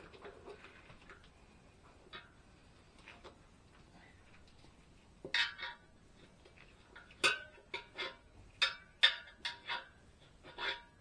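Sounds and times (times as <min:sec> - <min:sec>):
metal clanks on tire rim: 0:07.0 - 0:11.0.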